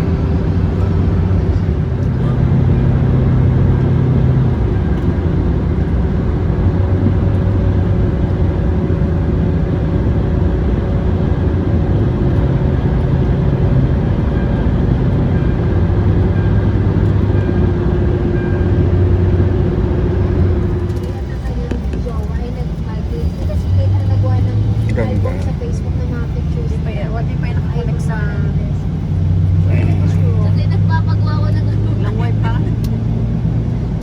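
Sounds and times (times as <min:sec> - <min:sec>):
vehicle engine and road noise: 0:00.0 - 0:34.0.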